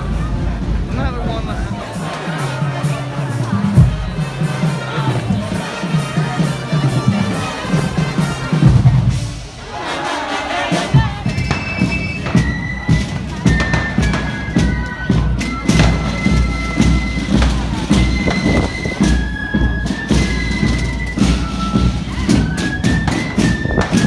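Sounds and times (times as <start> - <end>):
held high notes: 0.0 - 24.0
procession band with drumming: 0.0 - 24.0
sharp bangs and thuds: 10.8 - 24.0.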